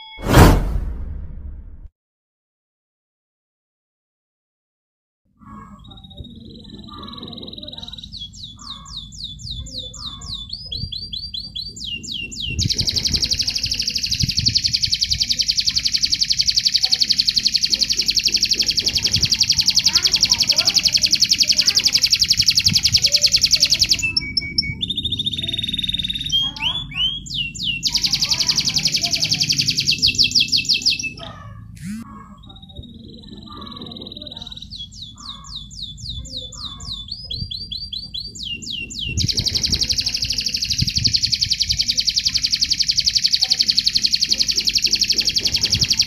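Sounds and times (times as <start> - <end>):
canary singing fast trills: 5.4 - 46.0.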